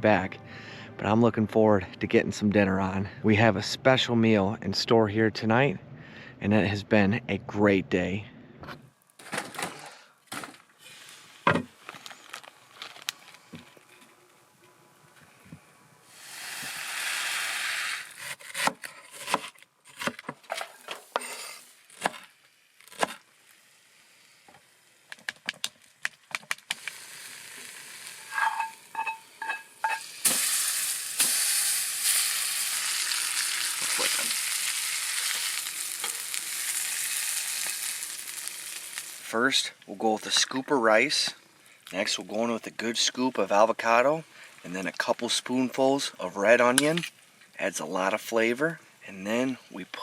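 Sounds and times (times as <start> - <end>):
fish sizzling in a pan: 16.0 - 18.1, 26.7 - 39.3
short hiss: 16.1 - 18.2
cooking utensils clicking and knocking: 28.2 - 30.1.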